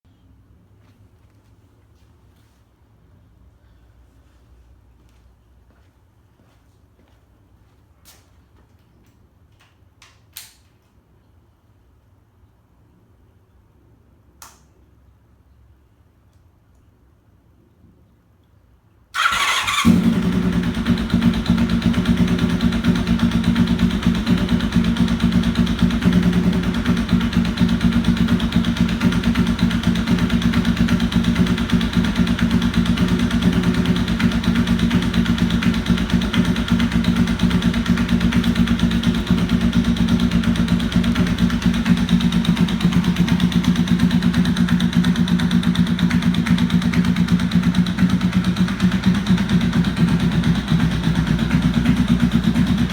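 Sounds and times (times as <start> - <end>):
motorcycle engine starting and idling: 19.2 - 52.9.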